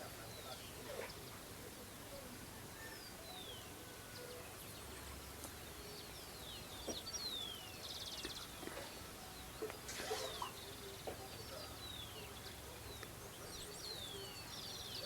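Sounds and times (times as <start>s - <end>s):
faint countryside hiss: 0.0s - 15.0s
birds whistling: 5.7s - 15.0s.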